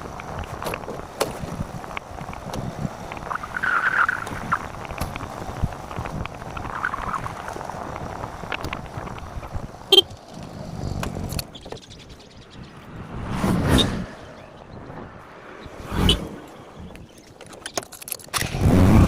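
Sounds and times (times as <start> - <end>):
road vehicle noise: 0.0 - 19.0
vehicle passing: 12.5 - 17.1.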